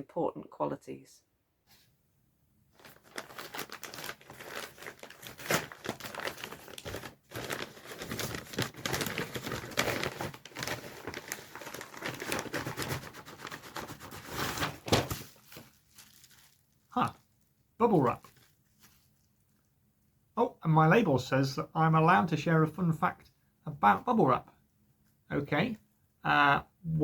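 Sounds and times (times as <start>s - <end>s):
wrapping paper tearing and crumpling: 2.8s - 17.3s, 18.1s - 19.3s.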